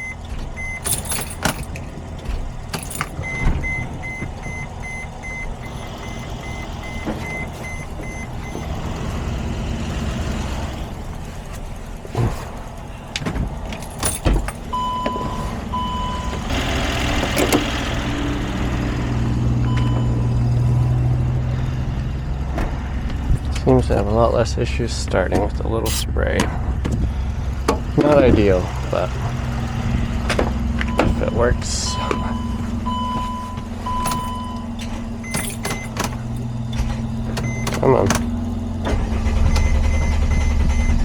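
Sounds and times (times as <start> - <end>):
dashboard warning beeps: 0.0 - 9.5, 14.0 - 17.8, 19.6 - 21.7, 24.9 - 41.0
diesel engine running roughly: 0.0 - 41.0.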